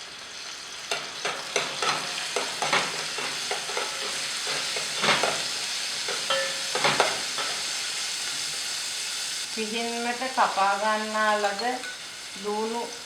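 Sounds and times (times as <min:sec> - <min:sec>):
leaves sizzling in hot oil: 0:00.0 - 0:13.0
spoon scraping a pan: 0:00.8 - 0:08.8, 0:11.3 - 0:12.2.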